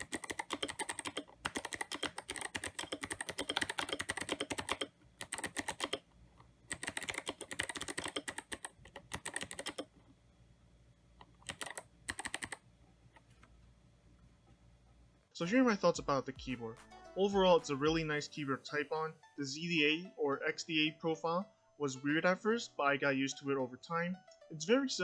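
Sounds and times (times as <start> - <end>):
clicky mechanical keyboard typing: 0.0 - 6.1, 6.7 - 9.9, 11.2 - 12.6.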